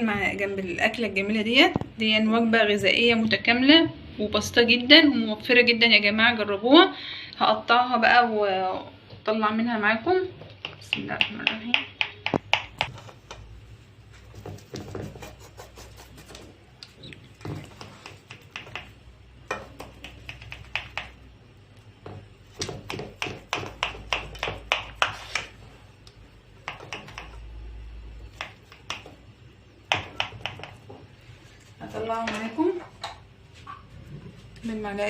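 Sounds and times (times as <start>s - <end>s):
knife tapping on baking tray: 22.1s - 25.5s, 29.9s - 30.8s.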